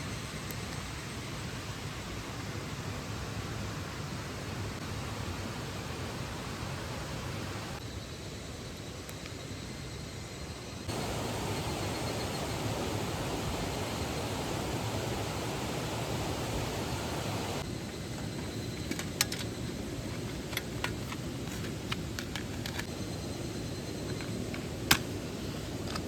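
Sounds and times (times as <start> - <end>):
stream rushing: 10.9 - 17.6.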